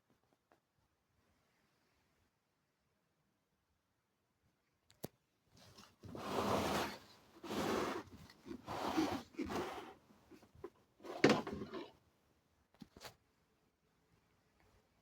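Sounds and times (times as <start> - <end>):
scraping handling noise: 5.6 - 12.0.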